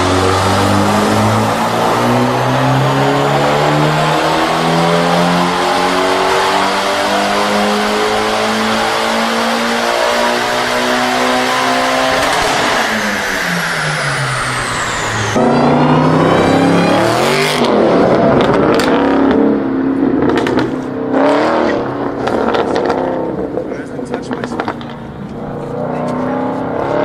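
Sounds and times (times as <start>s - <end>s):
car engine revving high: 0.0s - 27.0s.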